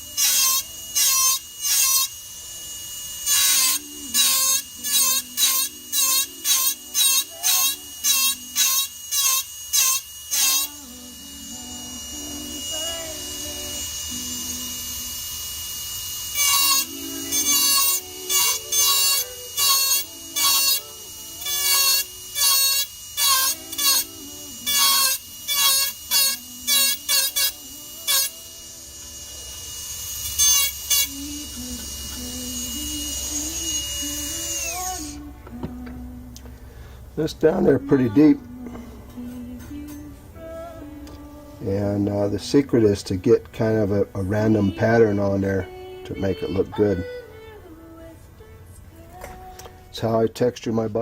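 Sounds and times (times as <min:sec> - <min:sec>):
engraving tool whining in bursts: 0:00.0 - 0:35.4.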